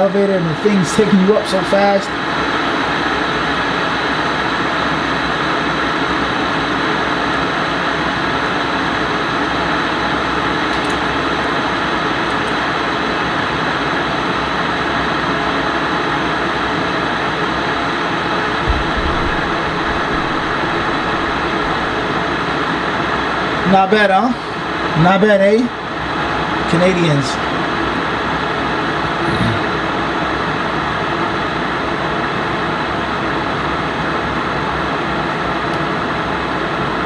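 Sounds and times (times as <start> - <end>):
low thump: 18.6 - 22.5.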